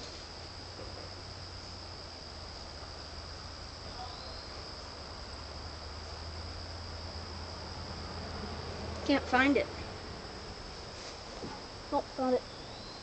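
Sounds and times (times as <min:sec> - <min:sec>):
high-pitched whine: 0:00.0 - 0:10.9
faint hiss: 0:00.0 - 0:13.0.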